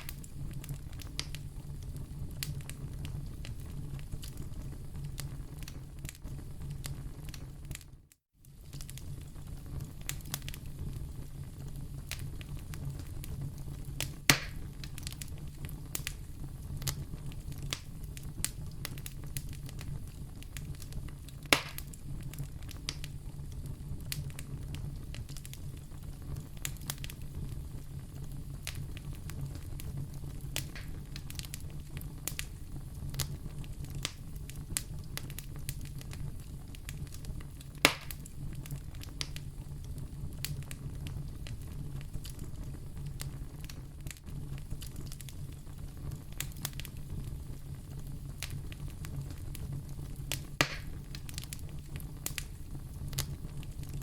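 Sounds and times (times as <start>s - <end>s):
sharp pops of fire: 0.0s - 7.9s, 8.5s - 54.0s
fire rumbling and crackling: 0.0s - 54.0s.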